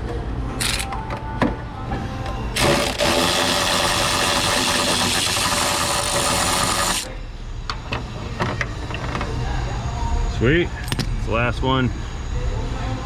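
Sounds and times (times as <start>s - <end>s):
air tool hissing: 2.6s - 7.1s.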